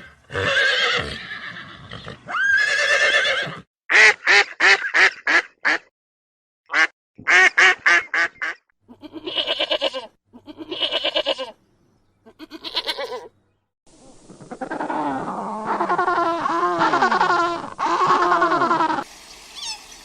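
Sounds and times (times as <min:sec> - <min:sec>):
horse whinnying: 0:00.0 - 0:03.7
goat bleating: 0:08.9 - 0:11.6, 0:12.2 - 0:13.3, 0:15.8 - 0:19.0.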